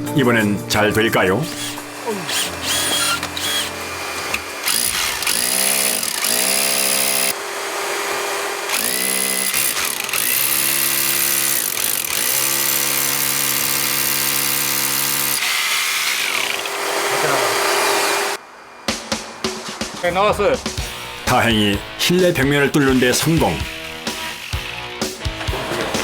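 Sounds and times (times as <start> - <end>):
electric drill boring through wall: 1.5 - 18.4, 23.6 - 26.0.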